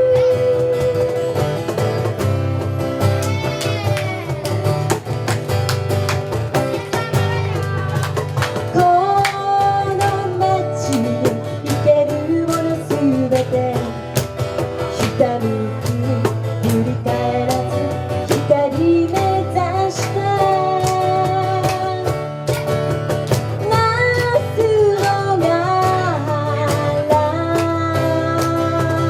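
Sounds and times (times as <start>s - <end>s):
person singing: 0.0s - 1.4s
strummed acoustic guitar: 0.0s - 29.0s.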